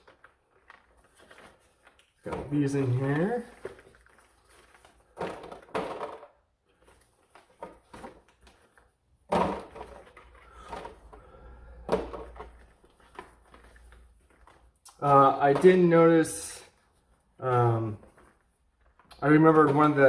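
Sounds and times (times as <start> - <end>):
rattling and rustling: 0.0 - 14.8.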